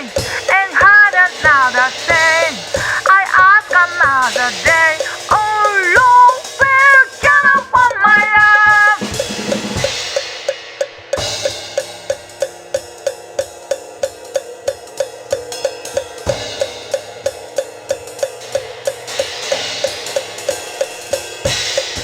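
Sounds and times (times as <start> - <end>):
cymbal crash: 0.0 - 0.5, 1.4 - 3.0, 9.0 - 22.0
person singing: 0.0 - 9.2
jazz drum kit: 0.0 - 22.0.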